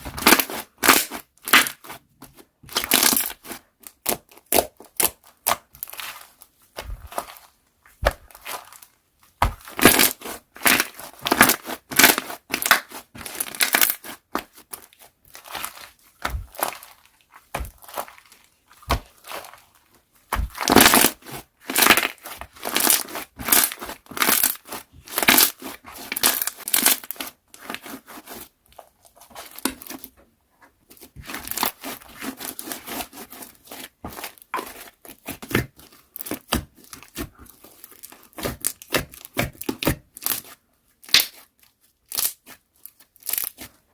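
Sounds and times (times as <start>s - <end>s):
slime squeezed wet crackles: 38.4s - 41.5s.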